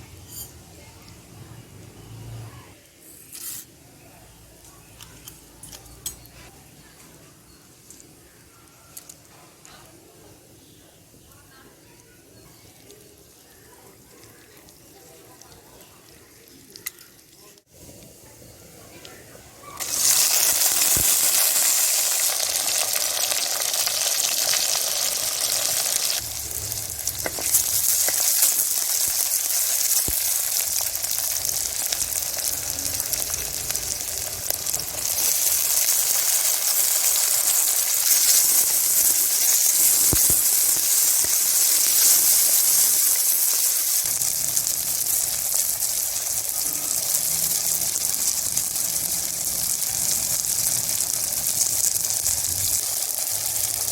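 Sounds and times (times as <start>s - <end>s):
food sizzling in oil: 17.7s - 53.9s.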